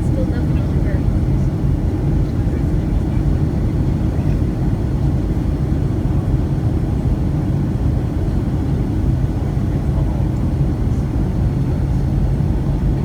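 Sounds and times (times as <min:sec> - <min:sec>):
airliner cabin rumble: 0:00.0 - 0:13.0.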